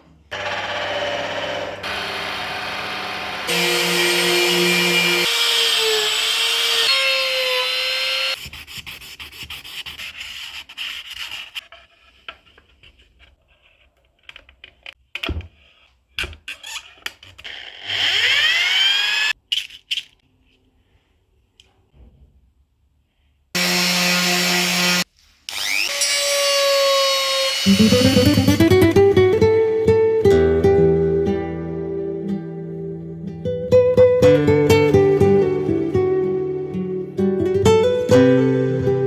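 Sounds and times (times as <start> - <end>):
power tool whining: 0.3 - 8.4, 17.7 - 19.3, 23.6 - 29.0.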